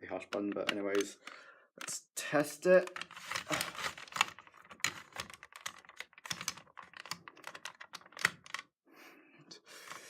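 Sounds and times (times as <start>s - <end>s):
light clicks and taps: 0.2s - 2.0s.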